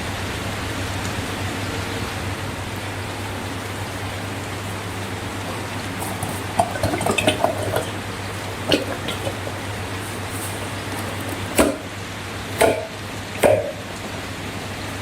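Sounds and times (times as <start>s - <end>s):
steady hiss: 2.6s - 15.0s
slime squelching: 4.9s - 11.9s.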